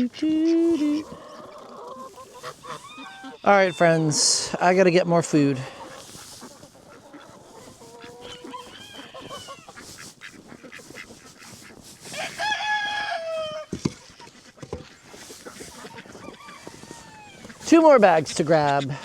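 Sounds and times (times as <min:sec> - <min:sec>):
poultry calling: 0:00.0 - 0:19.0
rooster crowing: 0:08.2 - 0:09.7, 0:12.1 - 0:13.7, 0:16.2 - 0:17.6.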